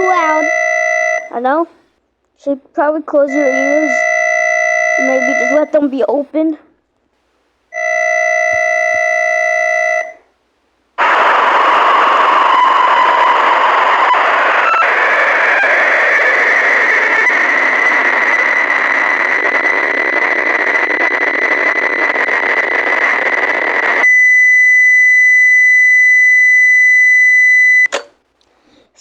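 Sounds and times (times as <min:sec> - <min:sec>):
phone speaker static hiss: 0:00.0 - 0:24.4
high-pitched beep: 0:03.3 - 0:05.7.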